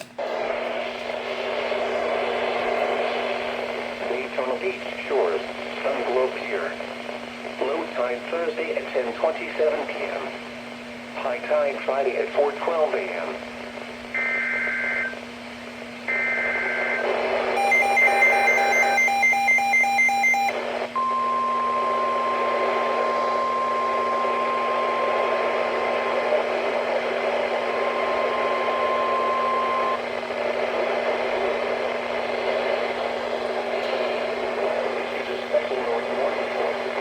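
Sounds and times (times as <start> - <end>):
radio static hiss: 0.1 - 21.0, 21.9 - 37.0
warning alarm tone: 17.6 - 24.5
rapid beeping: 17.6 - 24.9.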